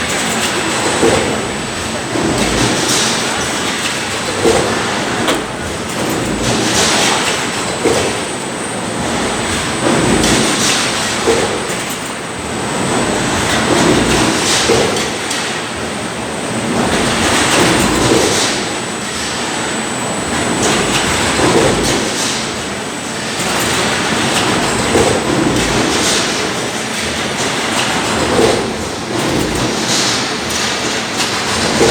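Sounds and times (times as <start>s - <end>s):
press die rumbling clatter: 2.2s - 8.2s.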